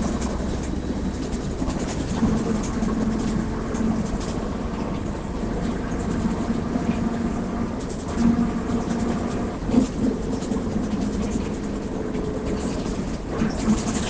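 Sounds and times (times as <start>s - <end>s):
bus engine droning: 0.0s - 14.0s.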